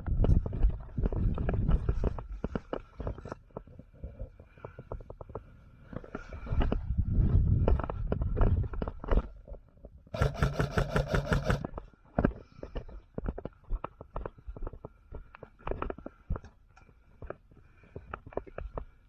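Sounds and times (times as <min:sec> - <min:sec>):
airsoft gun full-auto burst: 0:10.2 - 0:11.7
gear clicks and knocks: 0:10.2 - 0:11.8.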